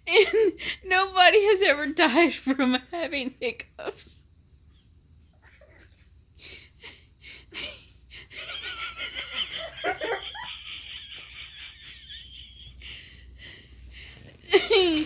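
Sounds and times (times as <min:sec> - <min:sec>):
person laughing hard with wheezing: 0:06.4 - 0:13.2, 0:14.4 - 0:15.0.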